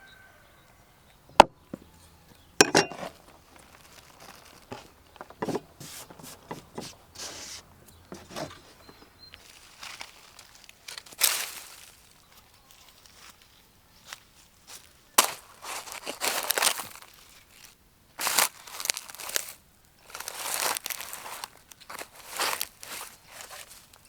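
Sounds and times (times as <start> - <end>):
rustling and clattering: 2.6 - 11.8, 20.1 - 24.0.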